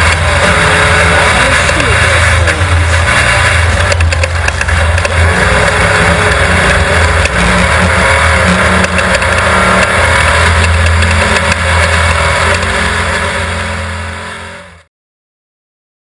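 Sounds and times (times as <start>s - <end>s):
clicks and knocks: 0.0s - 12.7s
race car engine under load: 0.0s - 14.9s.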